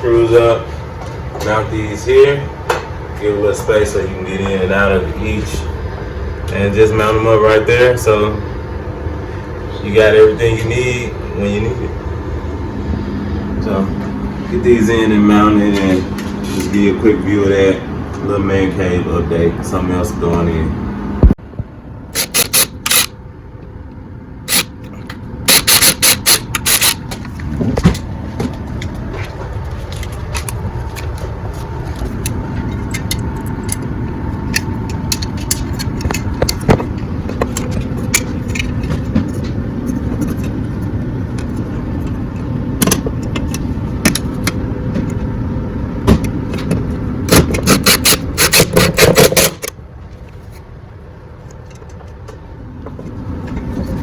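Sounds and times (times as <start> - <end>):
drill rapid clicking: 22.2 - 23.1, 25.5 - 27.0, 47.6 - 49.6.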